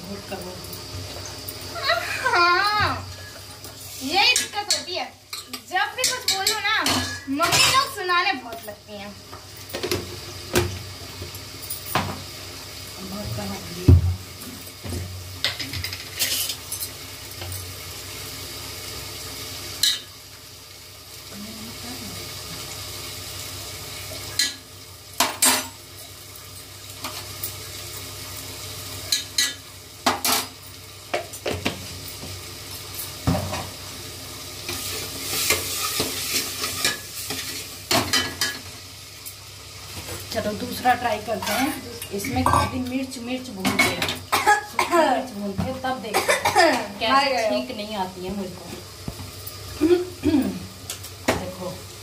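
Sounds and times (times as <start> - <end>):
food sizzling in a pan: 0.0 - 52.0
spoon clattering on pan: 4.3 - 7.9, 24.4 - 24.6
metal spoon scraping a pan: 15.7 - 16.9, 41.4 - 41.8.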